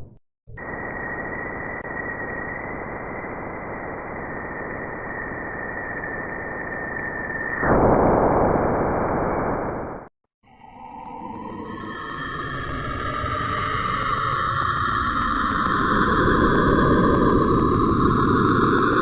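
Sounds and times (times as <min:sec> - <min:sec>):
steady high whistle: 0:00.6 - 0:08.1.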